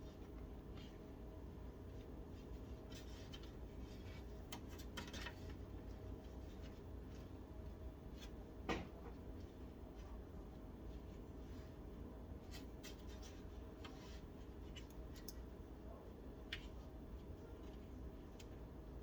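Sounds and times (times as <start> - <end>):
steady low hum: 0.0 - 19.0
computer cables clicking and rustling: 1.9 - 10.1, 12.5 - 15.7, 16.4 - 18.7.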